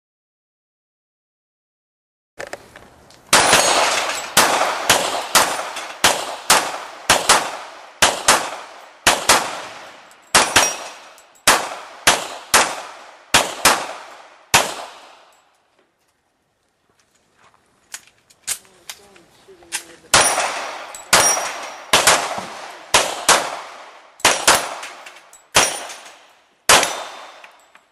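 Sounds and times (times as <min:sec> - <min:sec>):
gunshots ringing on steel targets: 0:03.3 - 0:15.5, 0:20.1 - 0:27.9.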